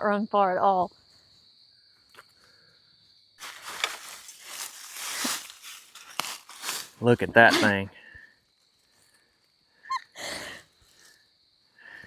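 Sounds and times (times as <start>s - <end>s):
high insect trill: 0.0s - 12.0s
footsteps in dry leaves: 3.4s - 7.8s.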